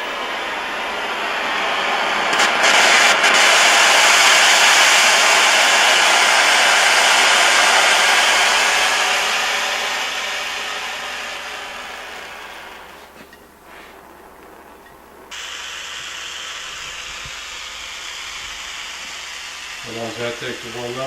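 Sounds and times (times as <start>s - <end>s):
torch hissing: 0.0s - 21.0s.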